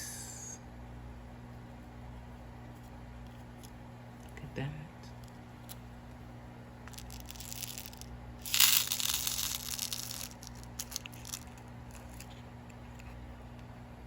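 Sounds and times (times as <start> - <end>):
plastic packaging crinkling: 6.9 - 12.4.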